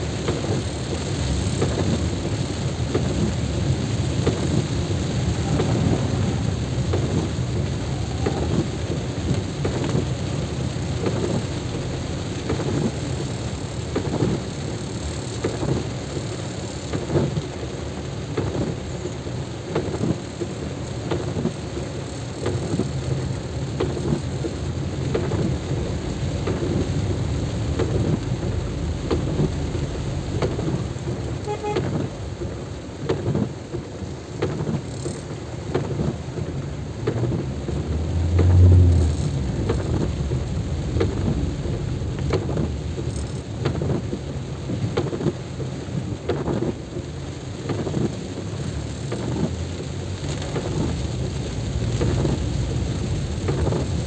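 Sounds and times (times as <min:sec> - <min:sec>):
heavy rain: 0:00.0 - 0:54.0
low rumble: 0:03.1 - 0:10.7, 0:36.4 - 0:44.0.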